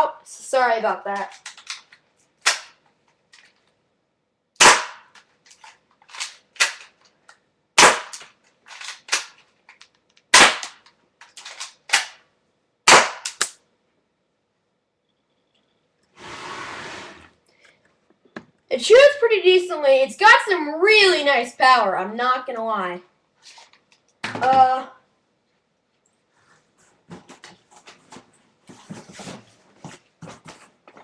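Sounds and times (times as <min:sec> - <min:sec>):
airsoft pistol shots: 0:04.6 - 0:05.1, 0:07.8 - 0:08.2, 0:10.3 - 0:10.8, 0:12.9 - 0:13.5.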